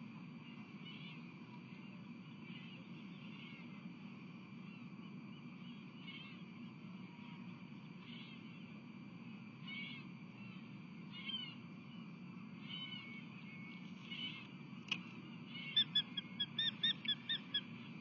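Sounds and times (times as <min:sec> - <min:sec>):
osprey chirping calls: 0:15.5 - 0:17.9.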